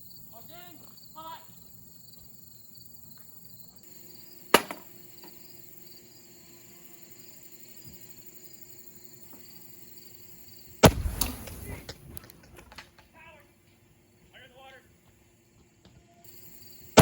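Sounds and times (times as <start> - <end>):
aerosol can cracking: 4.5 - 4.9, 10.8 - 13.0
aerosol can bursting bang: 4.5 - 5.0, 10.8 - 12.0.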